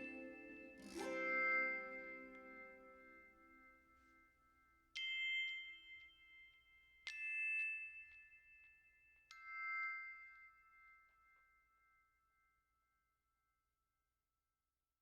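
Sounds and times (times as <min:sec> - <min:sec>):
bell-like struck chords: 0:00.0 - 0:04.3.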